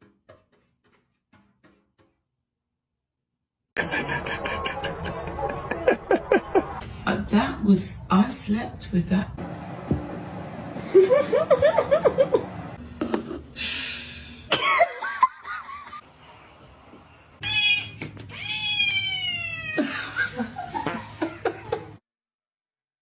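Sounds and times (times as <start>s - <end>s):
cat meowing: 17.4s - 19.8s.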